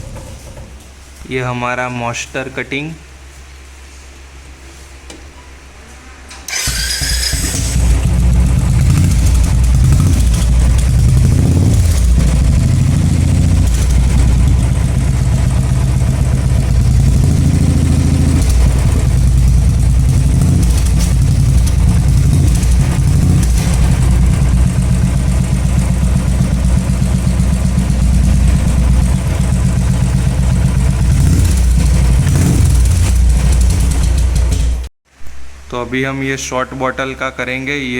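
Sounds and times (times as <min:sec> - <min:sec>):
motorcycle engine idling and revving: 0:06.5 - 0:34.9.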